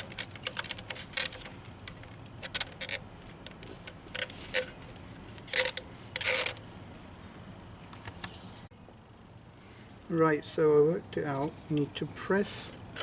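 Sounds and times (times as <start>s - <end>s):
sharp clicks of small parts: 0.0s - 6.6s
small hard parts rattling: 0.0s - 6.6s.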